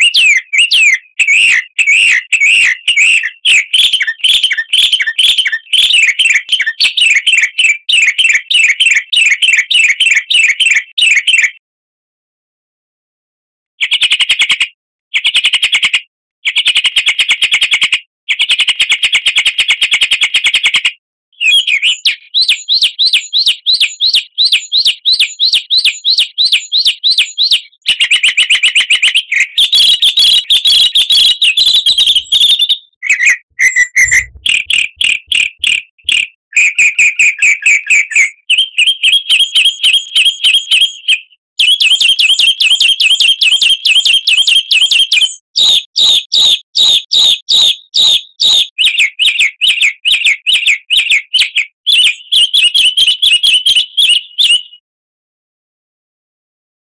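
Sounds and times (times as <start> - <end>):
songbird chirps and trills: 28.7 - 36.2.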